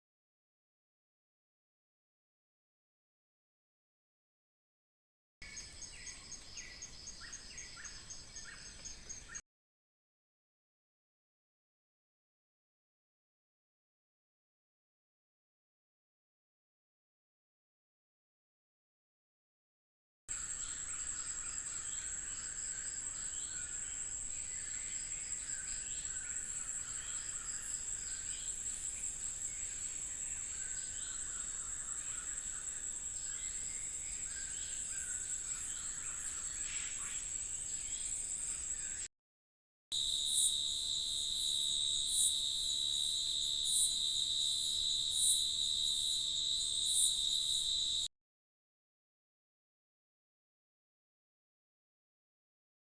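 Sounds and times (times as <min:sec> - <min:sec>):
insects trilling: 0:20.3 - 0:39.1, 0:40.0 - 0:48.1
short insect calls: 0:20.3 - 0:39.1, 0:40.0 - 0:48.1
sharp insect chirps: 0:40.0 - 0:48.1.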